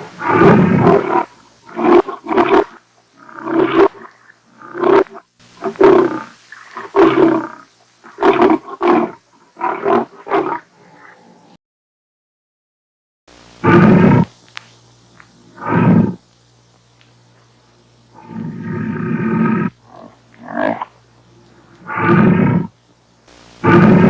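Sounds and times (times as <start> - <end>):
lion grunting calls: 0.0 - 11.6, 13.6 - 14.3, 15.5 - 16.2, 18.1 - 22.7, 23.6 - 24.0
lion roaring: 0.0 - 11.6, 13.6 - 14.3, 15.5 - 16.2, 18.1 - 20.9, 21.6 - 22.7, 23.6 - 24.0.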